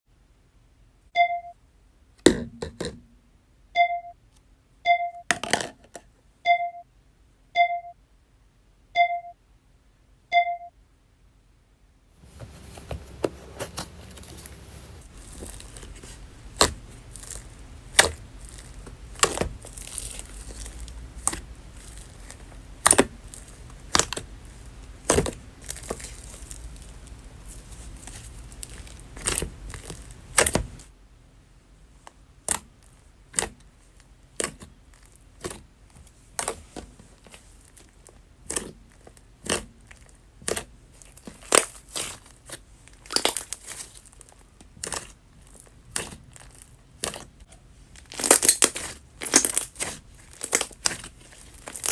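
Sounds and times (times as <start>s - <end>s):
crinkling: 12.2s - 30.9s, 33.9s - 51.9s
slime squished by hand: 12.3s - 30.8s, 38.4s - 51.9s.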